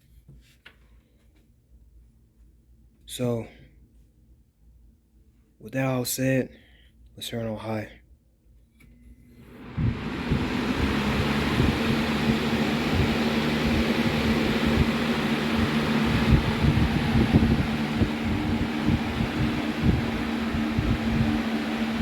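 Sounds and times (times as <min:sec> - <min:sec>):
box fan running: 0:09.0 - 0:22.0.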